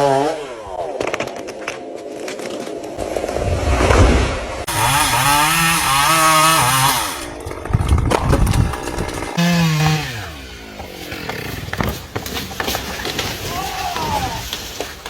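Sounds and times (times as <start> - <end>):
chainsaw revving: 4.7 - 11.8.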